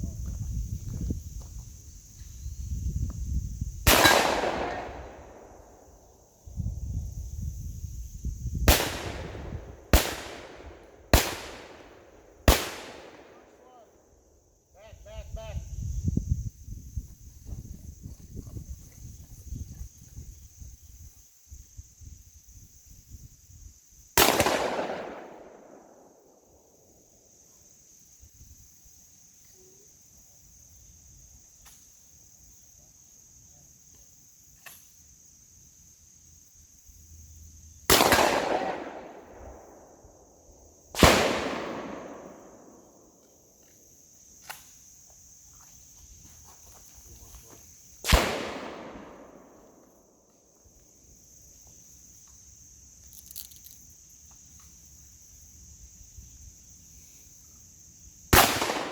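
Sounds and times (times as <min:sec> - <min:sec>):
high insect buzz: 0:00.0 - 0:04.0, 0:05.0 - 0:13.2, 0:14.0 - 0:24.2, 0:48.8 - 0:58.4
gunshots with echo: 0:03.9 - 0:05.4.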